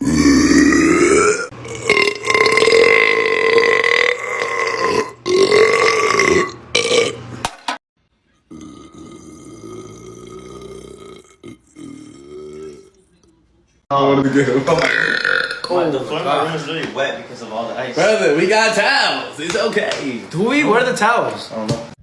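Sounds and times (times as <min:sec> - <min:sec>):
man burping: 0:00.0 - 0:07.3, 0:08.5 - 0:13.2, 0:14.7 - 0:15.7.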